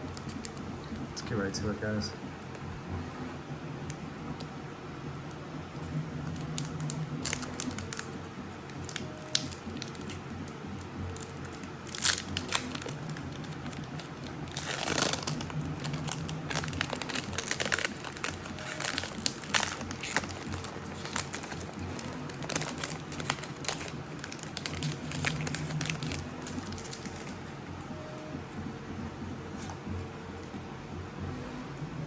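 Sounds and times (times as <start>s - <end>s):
plastic packaging crinkling and tearing: 0.1s - 1.0s, 6.2s - 27.5s.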